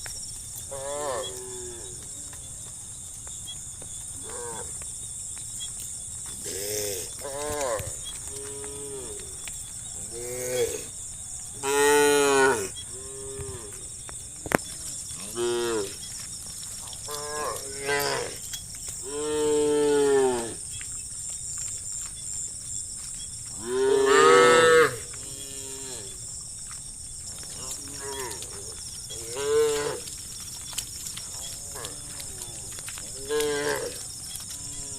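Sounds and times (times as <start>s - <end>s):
cattle mooing: 23.6s - 26.2s.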